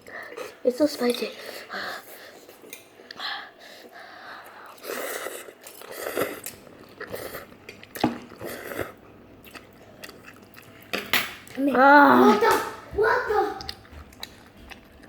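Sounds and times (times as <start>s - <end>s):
person chewing noodles: 1.4s - 11.6s, 13.6s - 15.0s.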